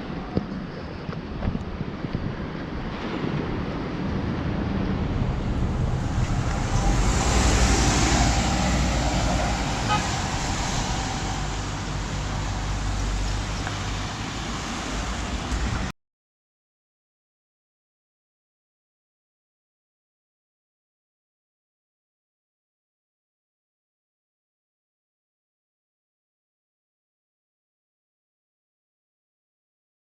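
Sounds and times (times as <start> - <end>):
traffic hum with low rumble: 0.0 - 16.0
motor vehicle passing: 3.0 - 15.9.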